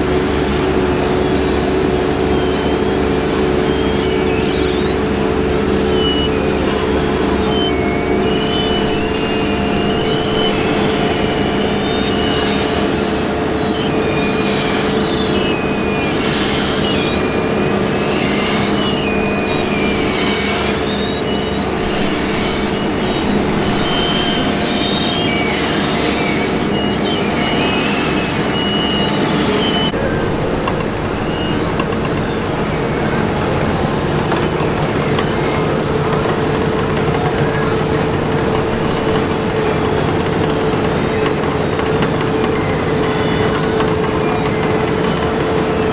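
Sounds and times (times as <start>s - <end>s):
diesel engine hum: 0.0s - 45.9s
high squealing tones: 0.0s - 45.9s.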